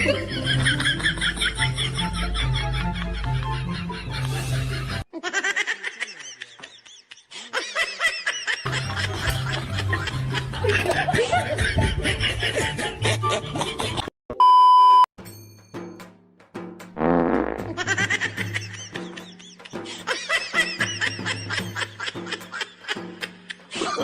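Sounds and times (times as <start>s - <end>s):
background music with bass line: 0.0s - 5.0s, 16.6s - 19.1s.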